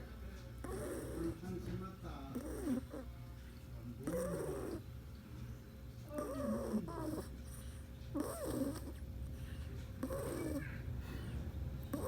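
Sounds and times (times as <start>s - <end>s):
cat snoring: 0.6s - 1.4s, 2.3s - 3.1s, 4.0s - 4.8s, 6.1s - 9.0s, 10.0s - 11.3s.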